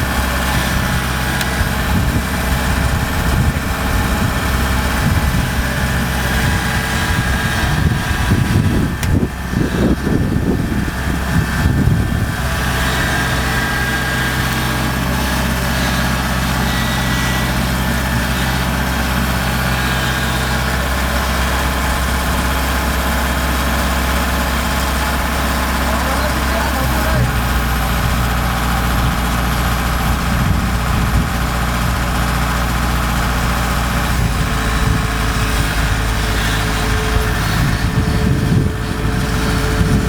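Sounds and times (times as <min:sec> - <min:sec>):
diesel engine running: 0:00.0 - 0:40.0.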